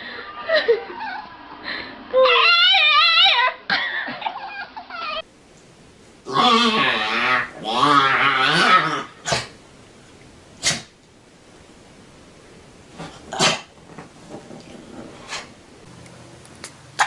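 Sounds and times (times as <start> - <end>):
dog whining: 0.4 - 1.4, 2.1 - 3.6, 4.2 - 5.3.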